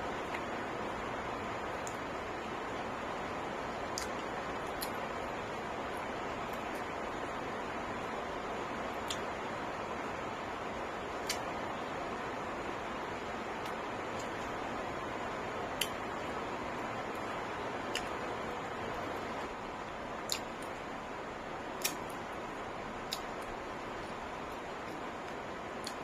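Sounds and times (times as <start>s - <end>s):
background hiss: 0.0s - 26.0s
sharp eating clicks: 3.8s - 5.0s, 9.0s - 9.3s, 11.2s - 11.6s, 15.8s - 16.0s, 17.1s - 18.3s, 20.2s - 20.8s, 21.8s - 22.3s, 23.0s - 26.0s.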